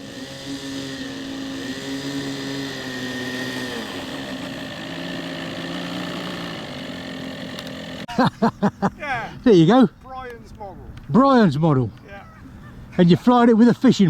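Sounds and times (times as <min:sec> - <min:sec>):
model aeroplane motor droning: 0:00.0 - 0:08.1.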